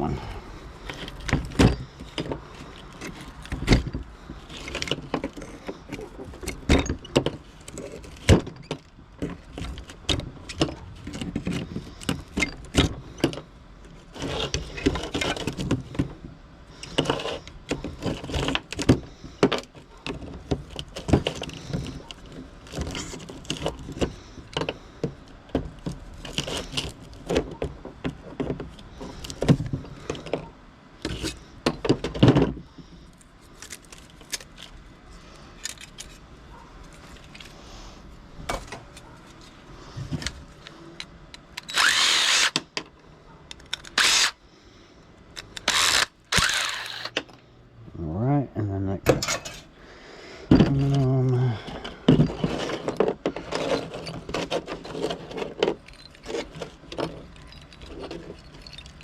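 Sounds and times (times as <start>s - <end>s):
scrap metal clinking and clattering: 49.2s - 49.7s, 51.7s - 59.0s.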